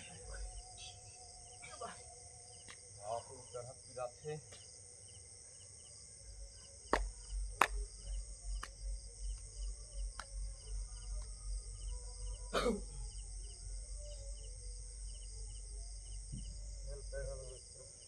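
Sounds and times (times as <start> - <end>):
constant high hiss: 0.0 - 18.0
insects chirping: 0.0 - 18.0
low rhythmic thuds: 6.2 - 18.0.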